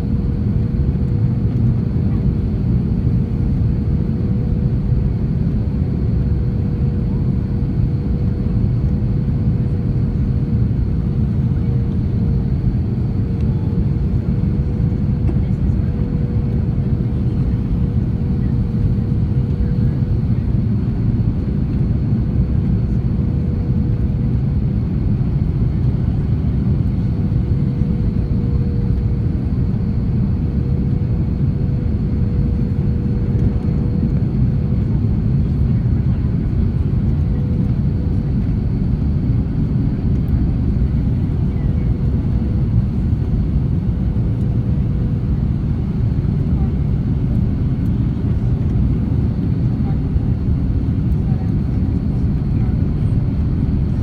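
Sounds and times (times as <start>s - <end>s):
airplane cabin rumble: 0.0s - 54.0s.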